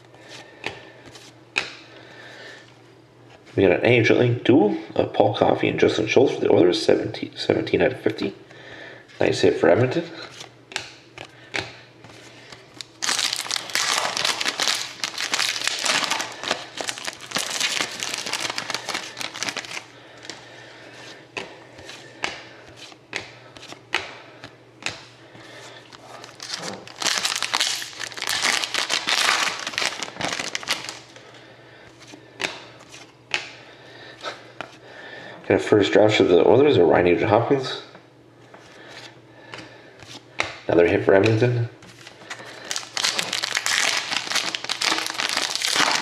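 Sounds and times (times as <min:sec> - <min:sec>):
plastic wrappers crinkling and tearing: 0:12.7 - 0:20.4, 0:25.9 - 0:31.2, 0:42.3 - 0:46.0.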